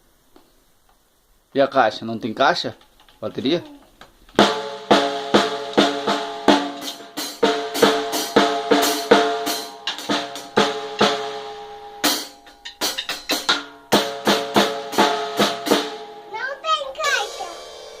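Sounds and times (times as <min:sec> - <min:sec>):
drum kit hits: 0:04.4 - 0:16.3, 0:17.0 - 0:18.0.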